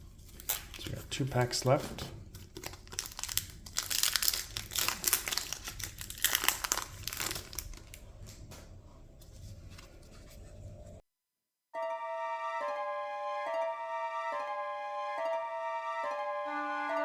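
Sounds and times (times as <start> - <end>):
wrapper crinkling and tearing: 0.1 - 8.5.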